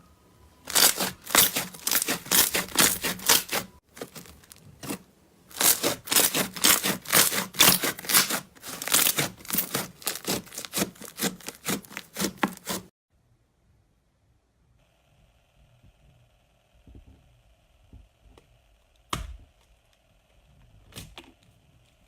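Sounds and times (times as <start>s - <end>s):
slime crackling and popping: 0.7s - 12.8s.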